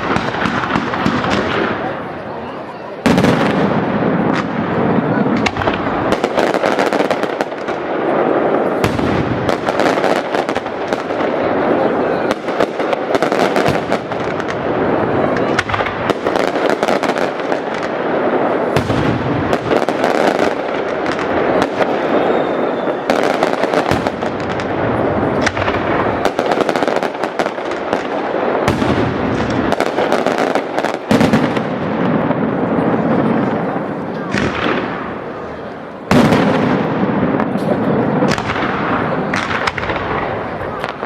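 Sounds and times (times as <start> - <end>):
fireworks bursting and crackling: 0.0 - 41.0.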